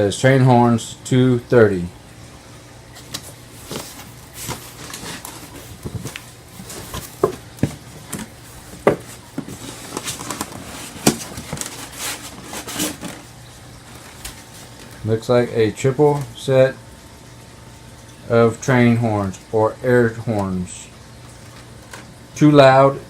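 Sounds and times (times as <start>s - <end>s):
cardboard box rustling: 3.0s - 15.0s.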